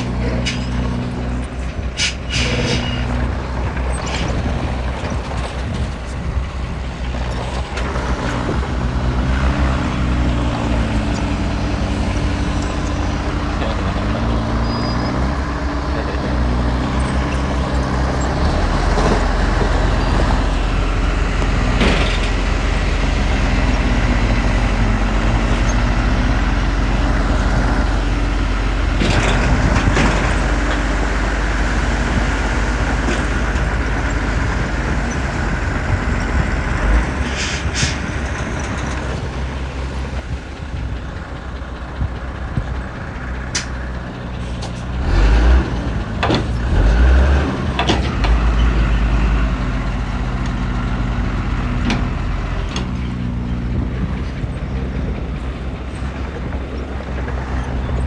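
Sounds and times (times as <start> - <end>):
heavy diesel machinery running: 0.0 - 58.0
metallic knocks and clanks: 21.5 - 22.6.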